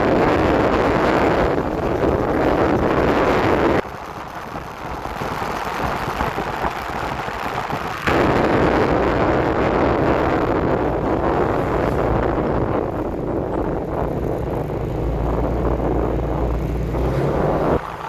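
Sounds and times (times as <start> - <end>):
low vehicle rumble: 0.0 - 18.0
wind noise on microphone: 0.0 - 18.0.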